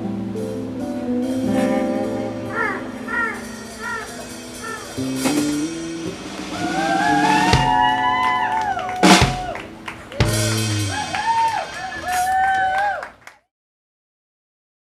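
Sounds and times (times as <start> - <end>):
live band playing: 0.0 - 13.2
cymbal crash: 3.4 - 8.0.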